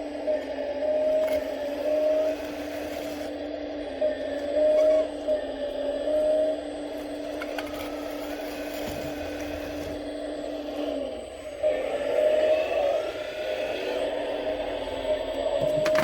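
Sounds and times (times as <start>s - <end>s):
hydraulic pump whining: 0.0s - 16.0s.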